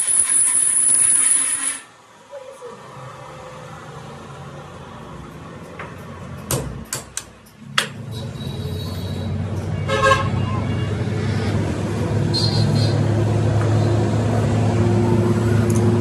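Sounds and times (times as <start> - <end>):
power tool whining on metal: 0.0 - 1.9
sharp metallic knocks: 5.7 - 8.1.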